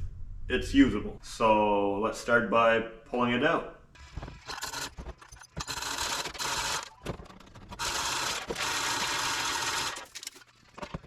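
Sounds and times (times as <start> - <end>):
power tool running with fast rattle: 4.0 - 10.6.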